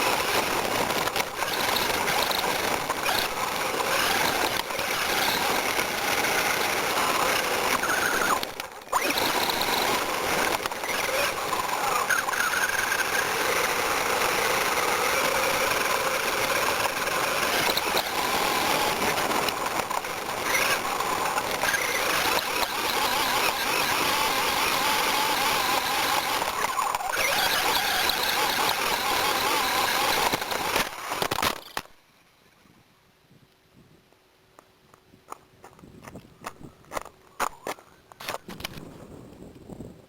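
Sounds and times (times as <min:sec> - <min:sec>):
electric motor whine: 0:00.0 - 0:31.9
rc car driving over gravel: 0:00.0 - 0:32.0, 0:35.3 - 0:39.7.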